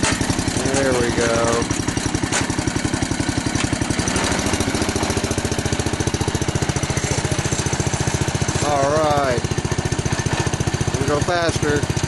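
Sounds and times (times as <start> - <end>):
small engine running steadily: 0.0 - 12.0.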